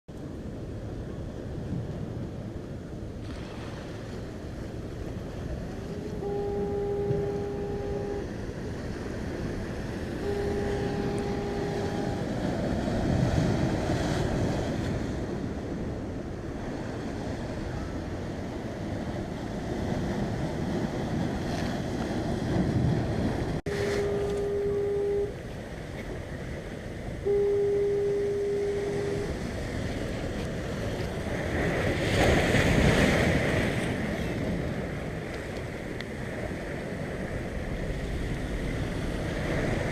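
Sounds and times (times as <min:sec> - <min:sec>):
ocean surf: 0:00.1 - 0:39.9
foghorn blasts: 0:05.2 - 0:14.1, 0:23.7 - 0:25.9, 0:27.1 - 0:33.4.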